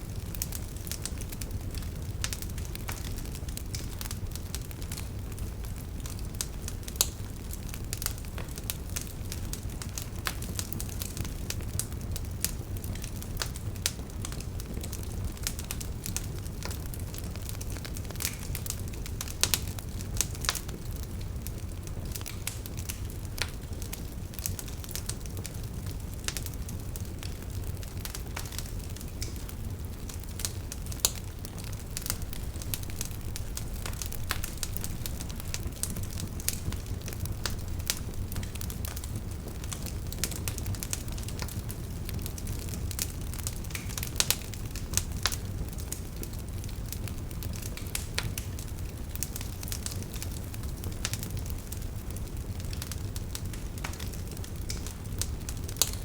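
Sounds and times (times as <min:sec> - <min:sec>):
wood fire crackling and popping: 0:00.0 - 0:56.0.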